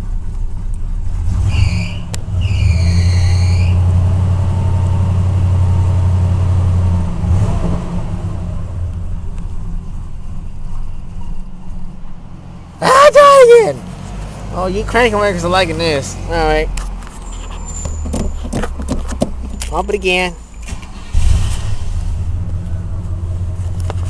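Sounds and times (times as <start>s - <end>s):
car engine revving and idling: 0.0s - 24.0s
brief high squeal: 1.4s - 3.8s, 17.2s - 18.4s.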